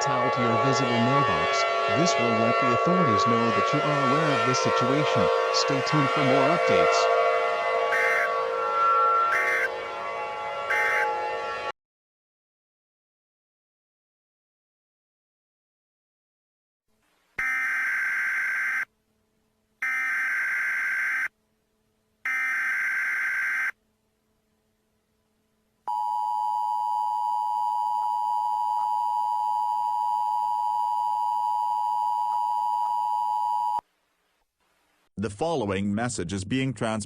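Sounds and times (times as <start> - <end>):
two-tone attention signal: 0.0 - 9.8, 10.7 - 11.3
buzzy data bursts: 7.9 - 8.4, 10.7 - 11.1.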